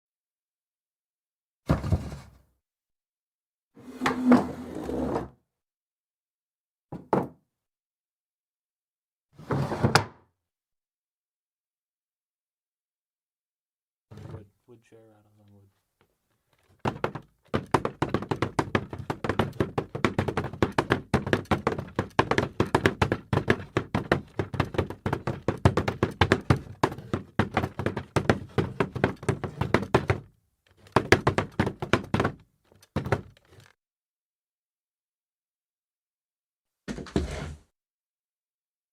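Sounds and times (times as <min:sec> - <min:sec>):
wooden chair dragged on wooden floor: 0:03.8 - 0:05.4, 0:09.4 - 0:10.1, 0:36.9 - 0:37.8.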